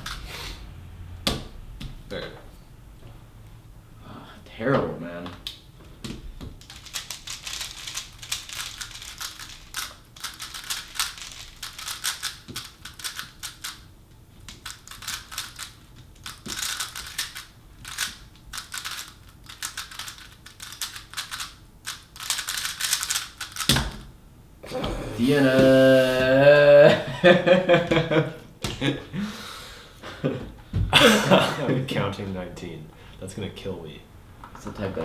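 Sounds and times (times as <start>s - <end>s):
plastic cube clicking: 14.5s - 23.9s.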